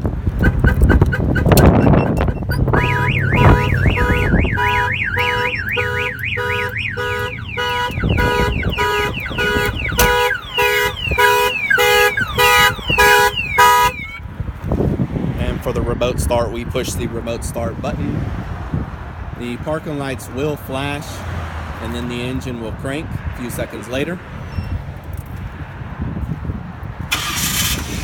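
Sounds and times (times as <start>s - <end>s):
car alarm siren: 1.4s - 14.2s.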